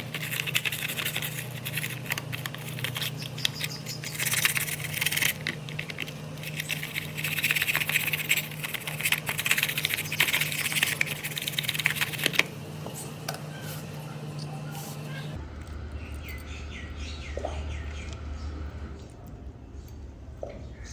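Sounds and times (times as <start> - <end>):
scratchy cleaning on toy car: 0.0 - 14.0
steady low hum: 0.0 - 20.4.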